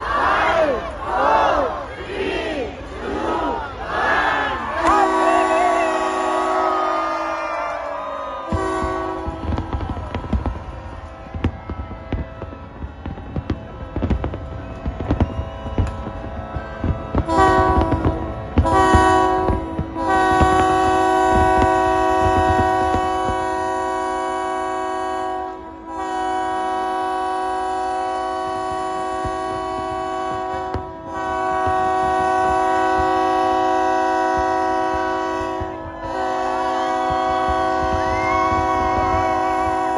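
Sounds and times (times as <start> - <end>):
loud blaring horn: 0.0 - 39.9
wavering whistle-like tones: 4.3 - 19.0, 35.7 - 39.9
fireworks bangs and crackles: 4.7 - 39.9.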